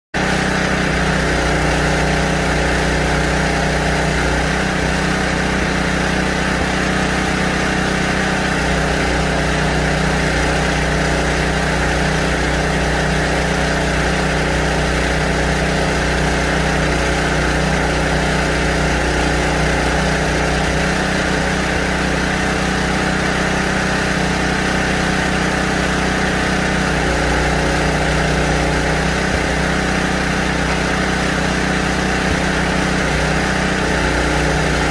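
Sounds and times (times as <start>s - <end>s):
generator engine running: 0.1s - 34.9s.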